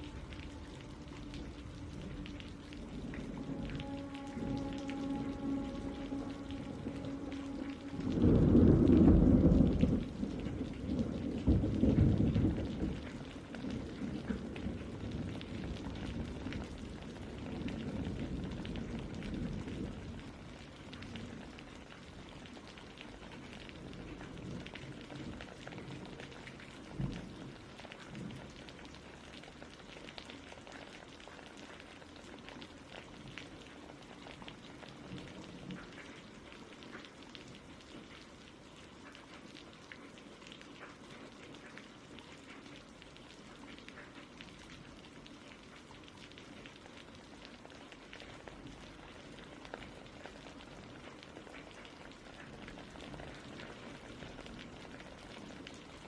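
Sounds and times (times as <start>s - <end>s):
low rumble of thunder: 0.0s - 30.8s, 33.0s - 38.5s
steady rain falling: 0.0s - 56.0s.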